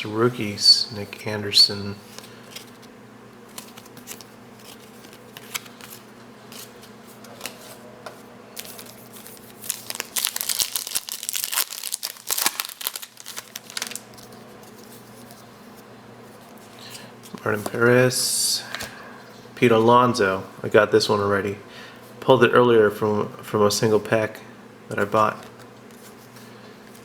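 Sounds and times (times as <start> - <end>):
wrapper crinkling and tearing: 8.6 - 14.4.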